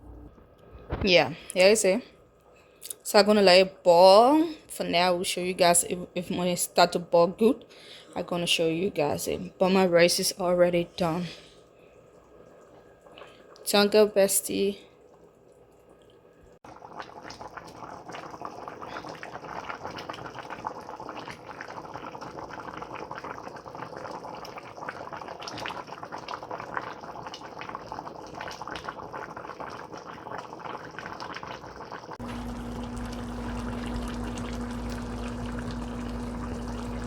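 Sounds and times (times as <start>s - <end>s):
pot bubbling at the boil: 12.0s - 13.8s, 15.0s - 37.0s
crackling and popping: 28.3s - 37.0s
steady low hum: 32.2s - 37.0s.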